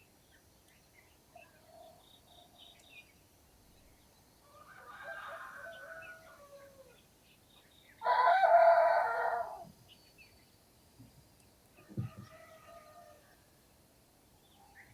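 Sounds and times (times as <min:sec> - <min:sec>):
rooster crowing: 0:04.4 - 0:07.0, 0:08.0 - 0:09.7, 0:11.9 - 0:13.4.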